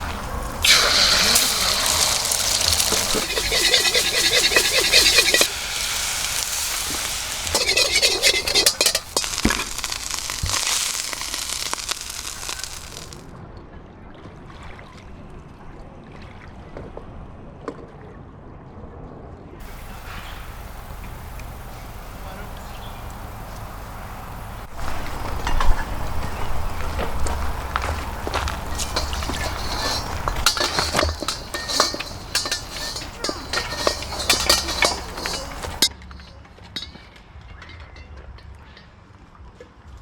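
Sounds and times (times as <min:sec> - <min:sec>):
rice sizzling in a wok: 0:00.0 - 0:13.2, 0:19.6 - 0:36.3
scrape of stirring in wok: 0:00.0 - 0:13.2, 0:24.8 - 0:35.9
small crackles: 0:00.0 - 0:13.3, 0:19.6 - 0:36.3.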